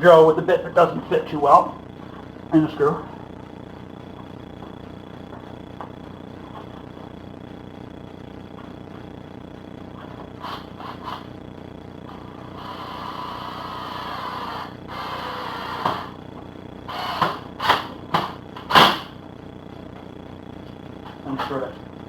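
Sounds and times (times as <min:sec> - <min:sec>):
steady low hum: 0:00.0 - 0:22.0
drill driving a screw: 0:12.5 - 0:16.2, 0:16.9 - 0:19.0.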